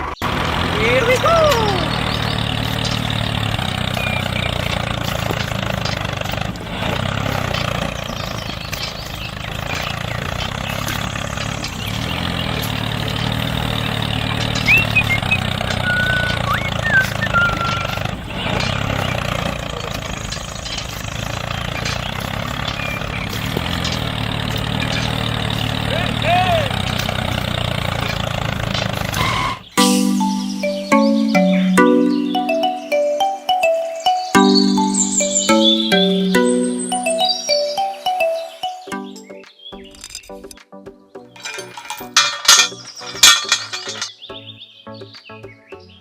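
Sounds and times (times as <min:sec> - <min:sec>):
small model tractor engine running: 0:00.0 - 0:29.8.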